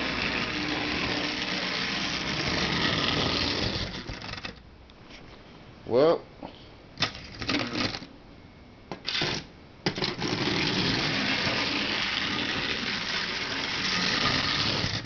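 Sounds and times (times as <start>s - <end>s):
toy locomotive electric motor: 0.0s - 4.6s, 7.0s - 8.0s, 10.1s - 15.0s.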